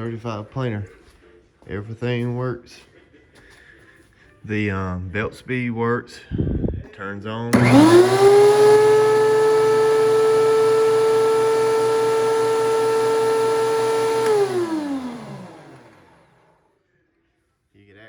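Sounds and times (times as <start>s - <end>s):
planer motor whine: 7.5s - 16.4s.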